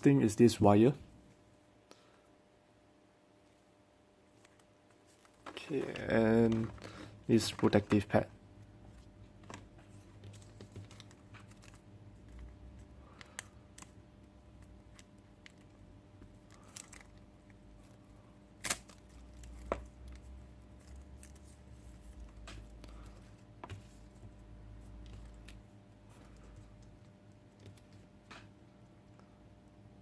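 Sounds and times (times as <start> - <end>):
plastic parts clicking and rustling: 4.4 - 8.2.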